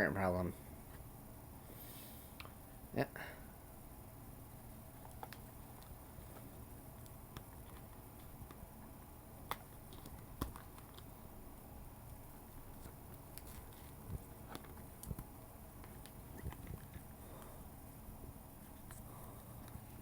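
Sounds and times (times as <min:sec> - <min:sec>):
low steady hum: 0:00.0 - 0:20.0
faint handling clicks and taps: 0:05.0 - 0:11.2, 0:12.0 - 0:17.6.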